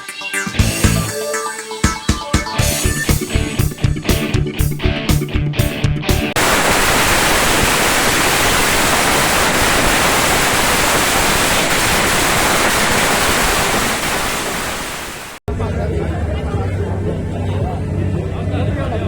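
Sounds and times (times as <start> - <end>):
bottle rockets hissing and crackling: 6.4 - 15.4.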